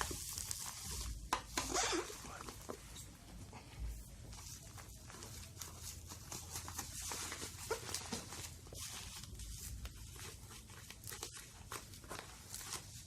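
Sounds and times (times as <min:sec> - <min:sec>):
packaging rustling: 0:04.2 - 0:13.0.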